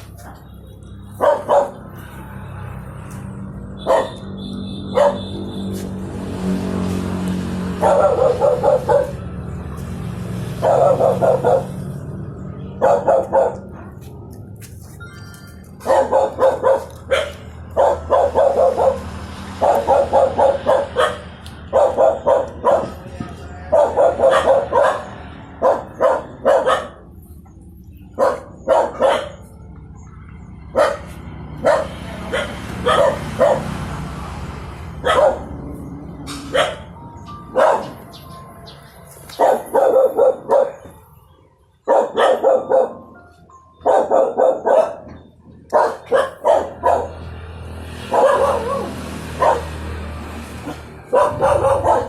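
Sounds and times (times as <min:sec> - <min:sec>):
dog barking: 0:01.2 - 0:02.0, 0:03.7 - 0:05.5, 0:07.8 - 0:09.3, 0:10.6 - 0:12.0, 0:12.8 - 0:14.0, 0:15.8 - 0:23.1, 0:23.7 - 0:27.2, 0:28.1 - 0:29.5, 0:30.7 - 0:33.9, 0:35.0 - 0:35.6, 0:36.4 - 0:38.1, 0:39.3 - 0:41.0, 0:41.8 - 0:43.2, 0:43.8 - 0:47.3, 0:48.0 - 0:49.9, 0:50.6 - 0:52.0.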